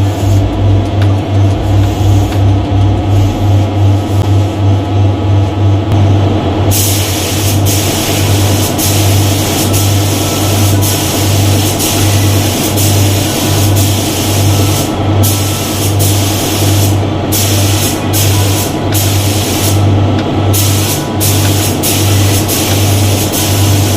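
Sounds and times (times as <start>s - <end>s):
paint spray gun hissing: 6.7s - 19.8s, 20.6s - 23.9s.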